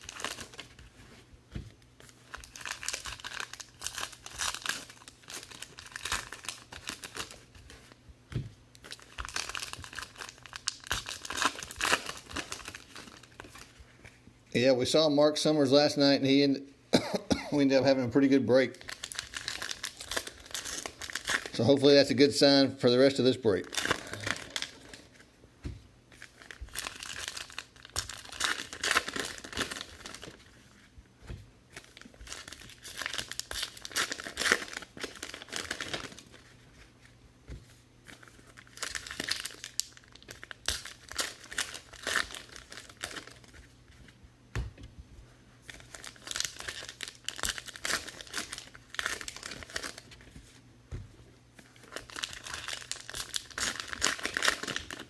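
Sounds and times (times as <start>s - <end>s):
foil wrappers tearing and crinkling: 0.0s - 1.0s, 2.0s - 7.9s, 8.8s - 13.8s, 18.7s - 22.2s, 23.1s - 25.1s, 26.2s - 30.6s, 31.7s - 36.5s, 38.1s - 43.7s, 45.7s - 50.2s, 51.6s - 55.0s.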